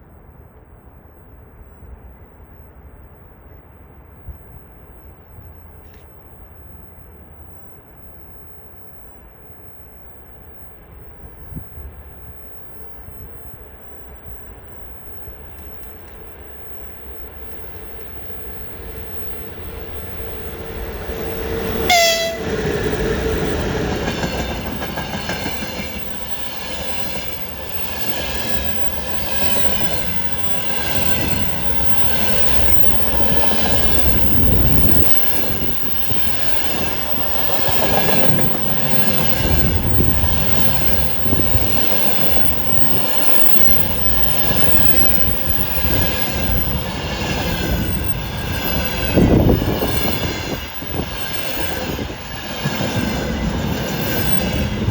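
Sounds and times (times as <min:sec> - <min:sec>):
train passing: 0:00.9 - 0:54.9
train horn blast: 0:21.4 - 0:23.4.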